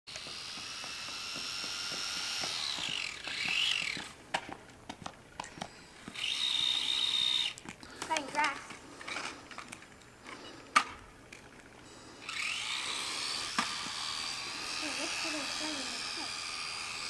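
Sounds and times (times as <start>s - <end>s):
small electric motor whining: 0.1s - 4.2s, 5.5s - 7.6s, 11.8s - 17.0s.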